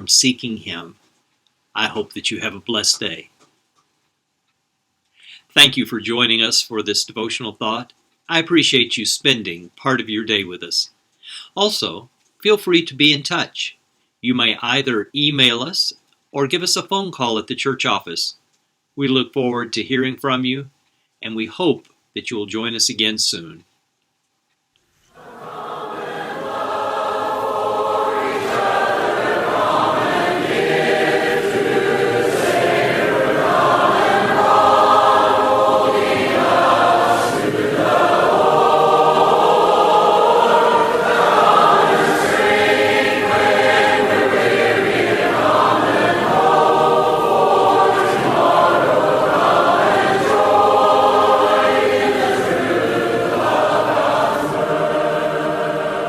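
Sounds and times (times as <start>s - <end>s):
choir singing a hymn: 25.1s - 56.0s.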